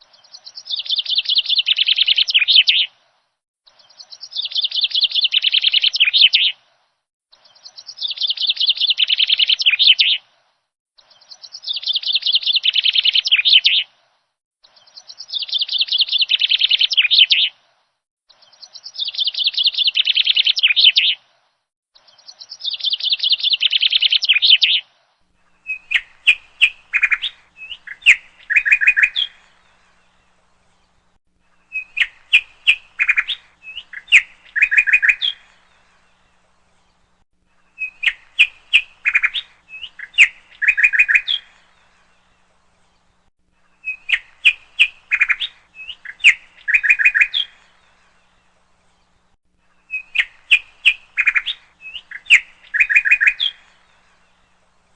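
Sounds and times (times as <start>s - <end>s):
bird chirping trill: 0.0s - 2.9s, 3.7s - 6.5s, 7.3s - 10.2s, 11.0s - 13.8s, 14.6s - 17.5s, 18.3s - 21.2s, 22.0s - 24.8s, 25.6s - 30.9s, 31.5s - 36.2s, 37.7s - 42.4s, 43.6s - 49.2s, 49.8s - 54.6s
bird sharp chirps and clicks: 0.1s - 2.9s, 3.7s - 6.6s, 7.3s - 10.2s, 11.0s - 13.9s, 14.6s - 17.5s, 18.4s - 21.2s, 22.0s - 24.8s, 25.6s - 29.9s, 31.6s - 35.8s, 37.6s - 41.9s, 43.7s - 48.1s, 49.8s - 54.2s.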